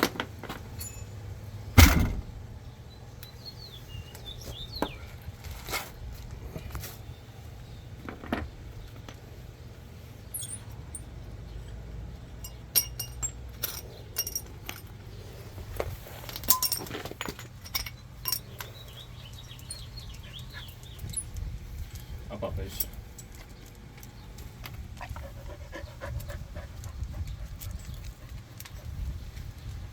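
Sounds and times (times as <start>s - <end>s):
steady low hum: 0.6s - 4.4s
metallic clinks and taps: 12.4s - 15.0s, 16.3s - 20.3s.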